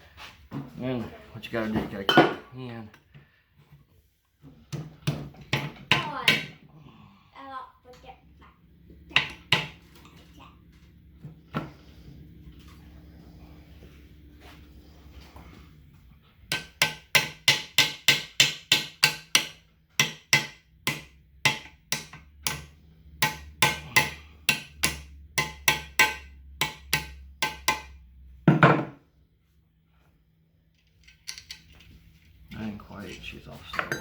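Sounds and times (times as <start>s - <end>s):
hammer tapping on metal: 16.5s - 28.0s.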